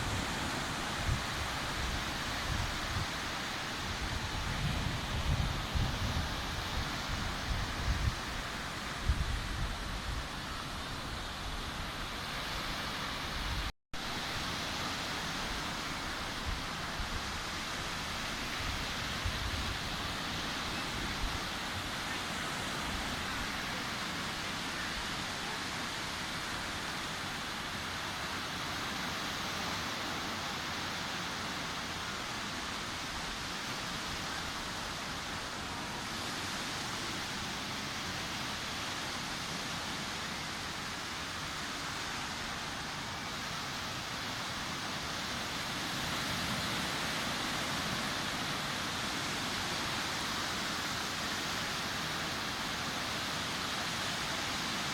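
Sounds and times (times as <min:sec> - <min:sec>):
waves breaking on a beach: 0:00.0 - 0:54.9.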